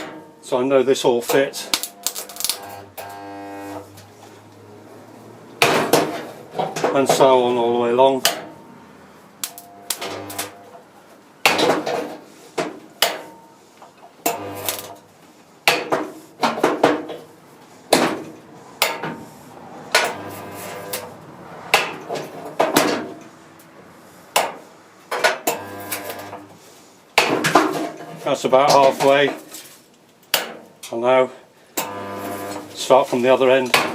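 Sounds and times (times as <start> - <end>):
spot welder humming: 1.6 - 4.1, 9.4 - 10.8, 14.2 - 15.1, 19.9 - 21.2, 25.4 - 26.6, 31.8 - 32.8
welder arms clanking on metal: 9.4 - 10.8, 11.4 - 15.0, 17.9 - 19.2.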